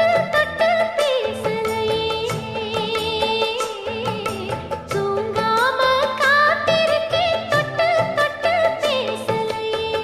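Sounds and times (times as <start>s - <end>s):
percussion and instruments: 0.0s - 10.0s.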